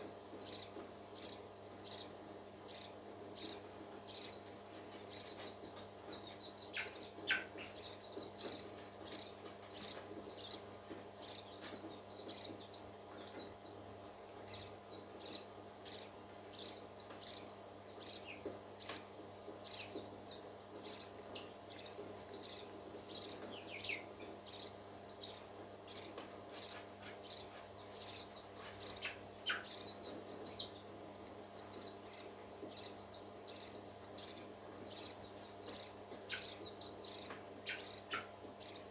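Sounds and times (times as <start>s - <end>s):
faint steady hum: 0.0s - 38.9s
parrots chirping: 20.9s - 38.9s.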